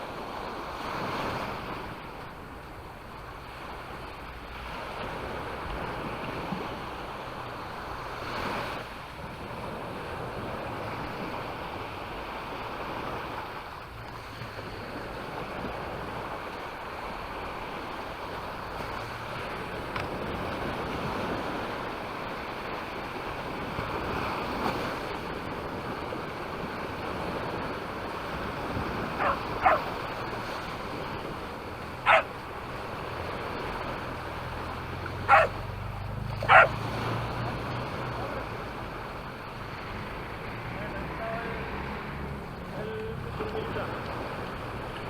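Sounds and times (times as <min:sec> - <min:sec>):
waves breaking on shore: 0:00.0 - 0:45.0
wind on microphone: 0:17.4 - 0:40.4
dog barking: 0:29.1 - 0:30.0, 0:32.0 - 0:32.4, 0:35.2 - 0:35.6, 0:36.4 - 0:36.8.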